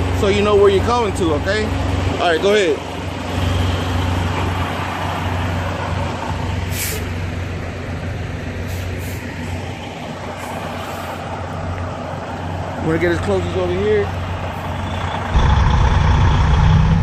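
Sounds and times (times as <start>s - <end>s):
truck diesel engine running: 0.0s - 17.0s
air brake hisses: 6.7s - 7.1s, 8.6s - 9.3s.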